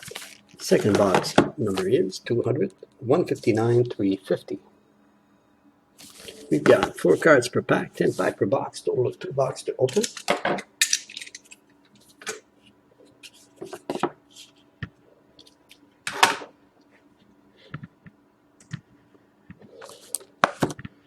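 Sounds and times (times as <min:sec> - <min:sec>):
wrapping and cardboard rustling: 0:00.0 - 0:01.9
faint steady hum: 0:00.0 - 0:21.0.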